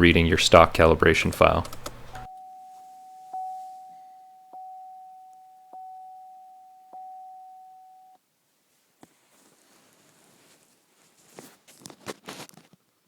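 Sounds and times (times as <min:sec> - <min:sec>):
car warning chime dinging: 0:01.4 - 0:08.2.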